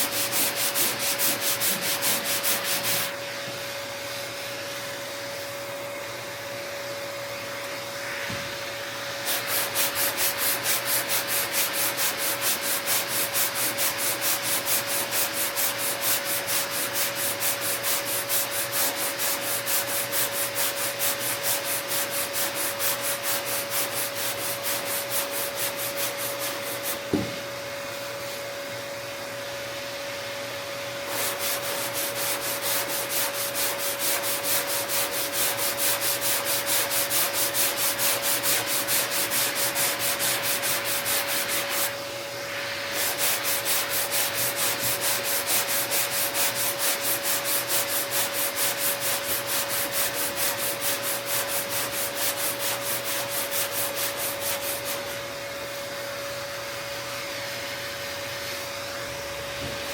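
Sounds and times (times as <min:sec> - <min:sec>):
sandpaper rubbing on metal: 0:00.0 - 0:03.1, 0:09.2 - 0:27.0, 0:31.0 - 0:41.9, 0:42.9 - 0:55.2
steady shop hum: 0:00.0 - 0:59.9.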